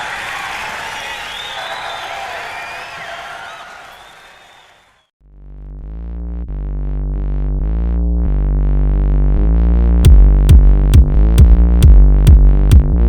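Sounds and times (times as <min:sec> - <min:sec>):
kick drum beat: 0:10.0 - 0:13.0.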